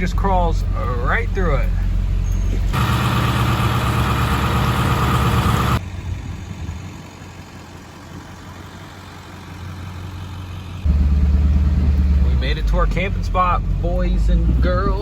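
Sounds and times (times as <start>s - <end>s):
pickup truck engine running: 0.0s - 15.0s.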